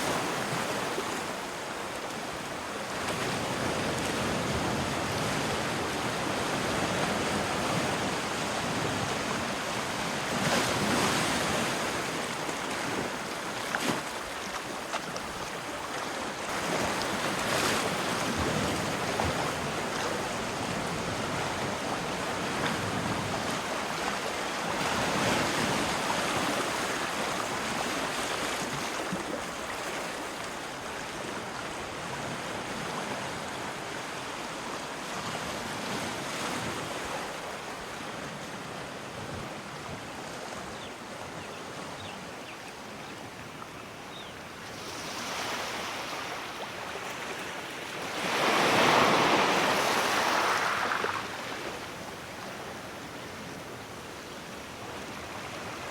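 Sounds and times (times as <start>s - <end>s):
sea waves washing ashore: 0.0s - 55.9s.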